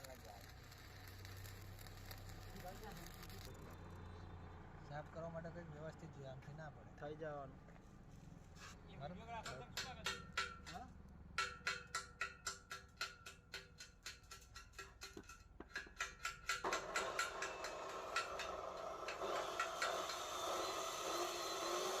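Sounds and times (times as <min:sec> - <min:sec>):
rough crackling hiss: 0:00.0 - 0:03.8
chipping hammer tapping on steel: 0:09.4 - 0:20.4.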